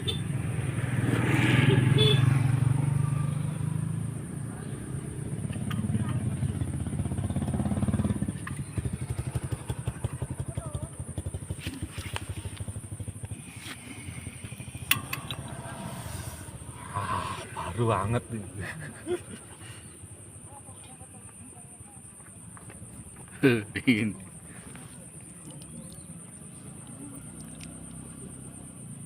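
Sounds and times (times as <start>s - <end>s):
gas stove burner rumbling: 12.7s - 17.8s.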